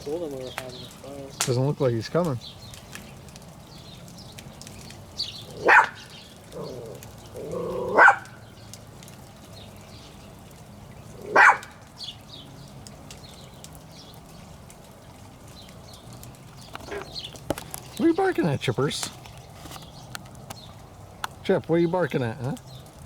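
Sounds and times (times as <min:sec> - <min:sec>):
dog barking: 0:05.5 - 0:08.4, 0:11.2 - 0:11.8.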